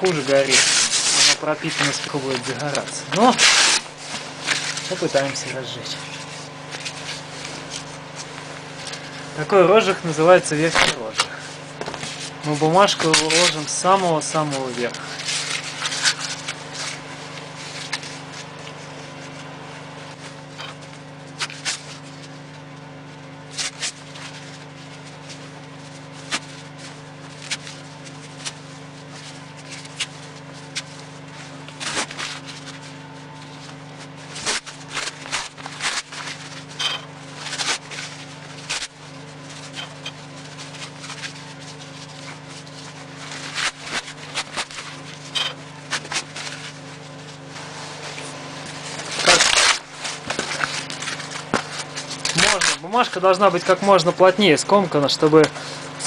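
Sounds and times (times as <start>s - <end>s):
newspaper crumpling and rustling: 0.0s - 19.5s, 20.2s - 56.0s
steady low hum: 0.0s - 56.0s.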